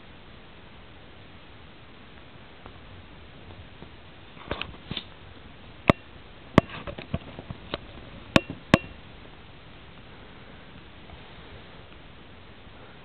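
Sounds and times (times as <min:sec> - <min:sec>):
sharp clicks and knocks: 0:05.9 - 0:09.0.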